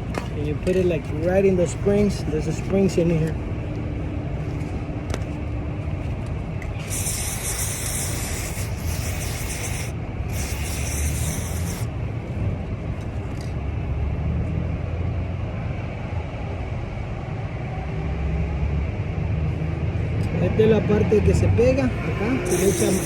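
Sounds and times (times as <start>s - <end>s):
aerosol can spraying: 6.8s - 11.9s, 22.4s - 23.0s.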